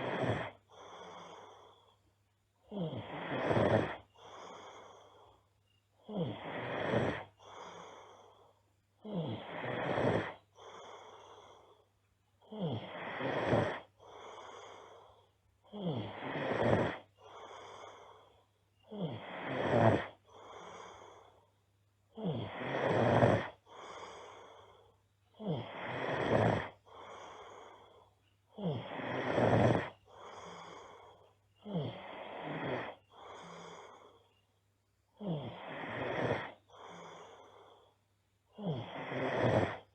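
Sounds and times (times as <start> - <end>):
girl snoring: 0.0 - 2.0, 2.6 - 21.5, 22.1 - 34.5, 35.2 - 39.9.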